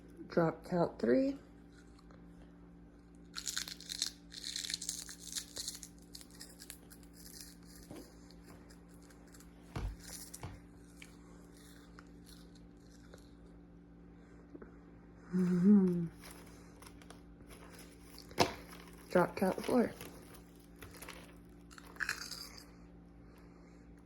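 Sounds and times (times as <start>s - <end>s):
crunching snack: 3.0s - 13.6s, 16.1s - 22.8s.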